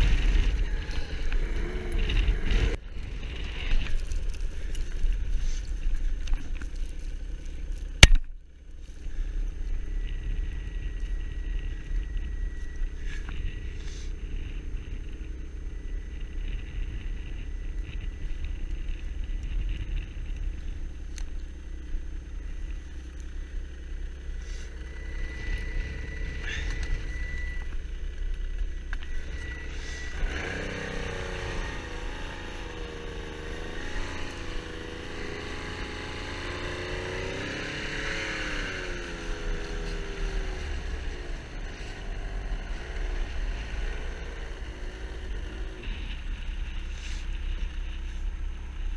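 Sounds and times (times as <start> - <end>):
snowmobile engine rumbling: 0.0 - 48.9.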